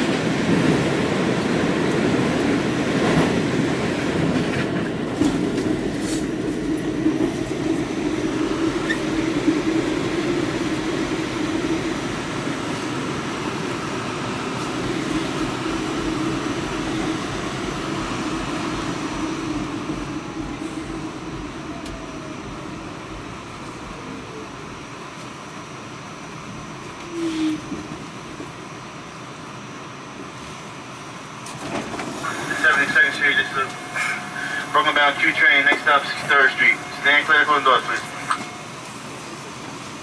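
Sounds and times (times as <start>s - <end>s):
subway train wheels rumbling: 0.0s - 40.0s.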